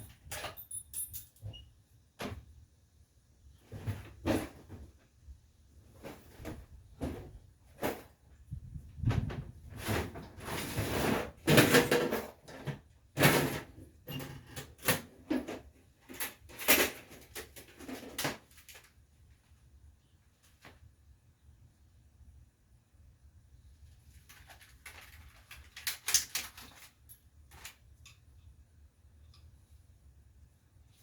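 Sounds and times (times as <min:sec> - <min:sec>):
tools knocking and rattling: 0:00.0 - 0:01.6, 0:11.5 - 0:18.4.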